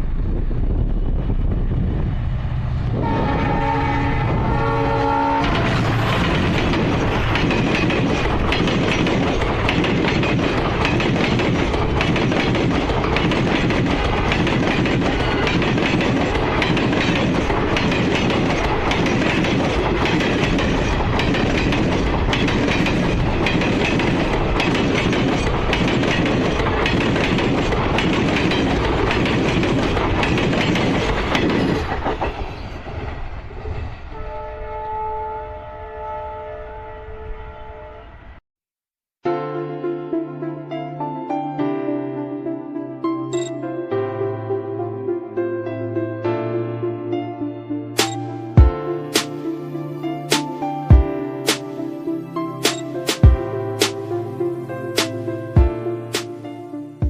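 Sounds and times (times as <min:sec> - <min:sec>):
train rushing past: 0:00.0 - 0:38.4
wheels clattering over rail joints: 0:05.4 - 0:33.3.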